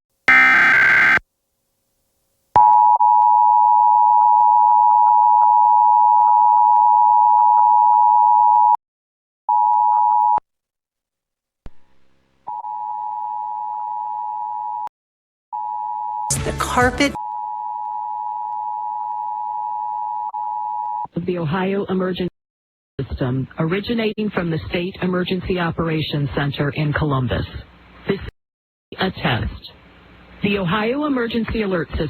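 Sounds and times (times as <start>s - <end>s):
harsh burst of noise: 0.3s - 1.2s.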